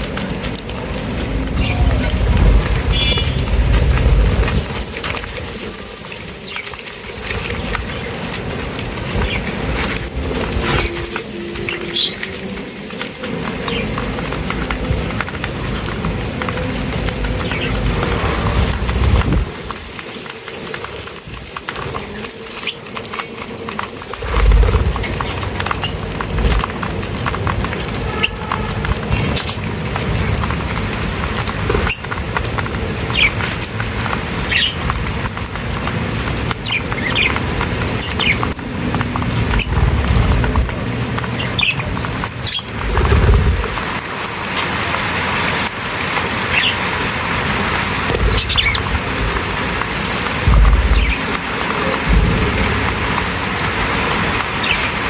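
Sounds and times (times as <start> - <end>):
low rumbling background noise: 0.0 - 55.0
small birds chirping: 1.0 - 14.2, 17.0 - 20.7, 21.8 - 35.1, 36.0 - 44.1, 48.1 - 49.4, 50.4 - 51.6, 54.5 - 55.0.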